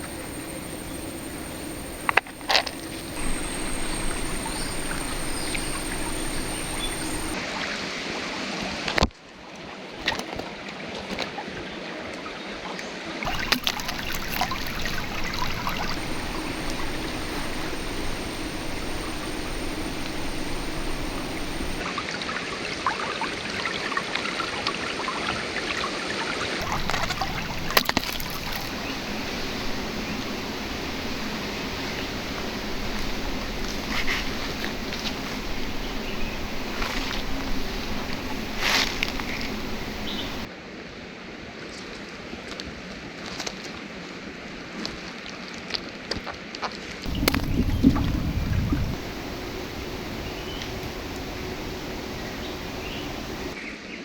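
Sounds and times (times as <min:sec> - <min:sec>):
river water running over stones: 0:00.0 - 0:07.4, 0:13.3 - 0:21.8, 0:26.6 - 0:40.5, 0:47.1 - 0:53.6.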